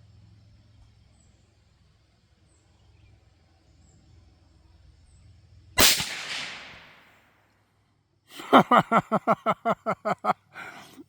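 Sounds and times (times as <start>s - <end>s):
rifle shot with echo: 5.8s - 7.2s.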